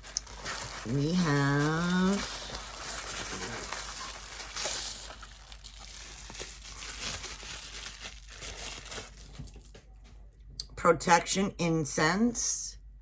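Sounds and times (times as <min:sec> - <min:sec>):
packaging crinkling and rustling: 0:00.0 - 0:10.1.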